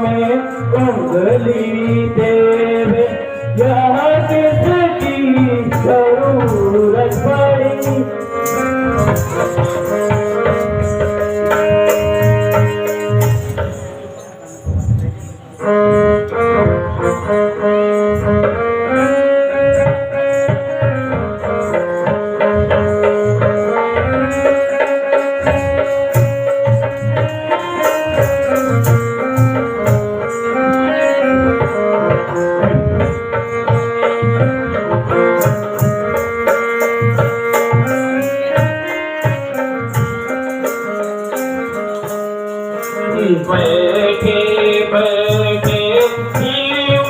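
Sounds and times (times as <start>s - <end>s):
hand-drum rhythm: 0.0s - 47.0s
melody of long held notes: 0.0s - 47.0s
high rattling shake: 2.8s - 16.1s.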